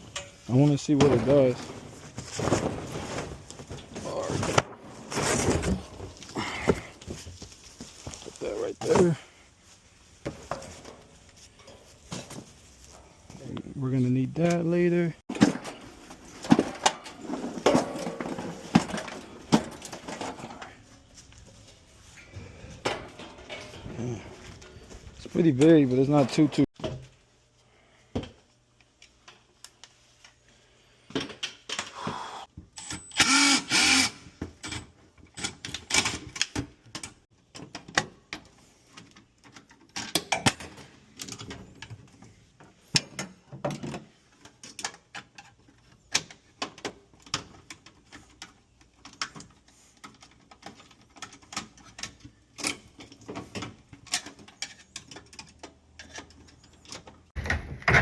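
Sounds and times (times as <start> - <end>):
tools clicking and knocking: 42.9 - 58.0.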